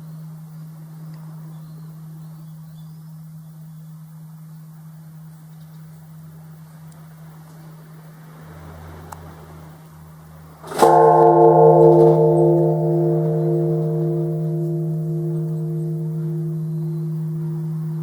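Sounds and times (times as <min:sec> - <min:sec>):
low hum: 0:10.6 - 0:18.0
temple bell ringing: 0:10.6 - 0:18.0.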